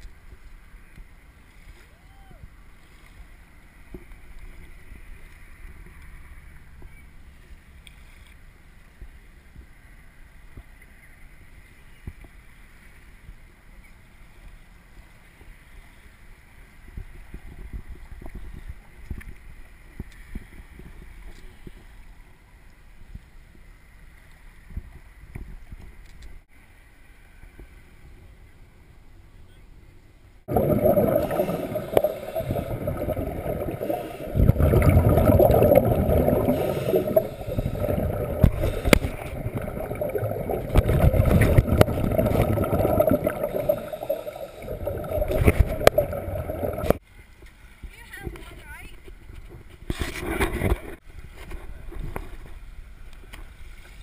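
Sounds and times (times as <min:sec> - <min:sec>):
muffled water rumble: 0:00.0 - 0:26.1, 0:27.5 - 0:54.0
loud rush of water: 0:30.5 - 0:47.0.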